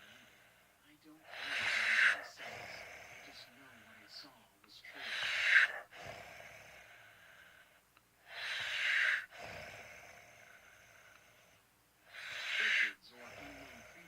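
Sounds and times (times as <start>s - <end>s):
person snoring: 1.3s - 4.0s, 5.0s - 7.5s, 8.3s - 14.0s.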